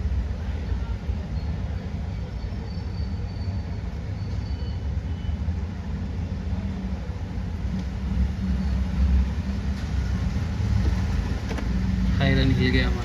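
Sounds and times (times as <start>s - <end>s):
low background rumble: 6.6s - 13.0s.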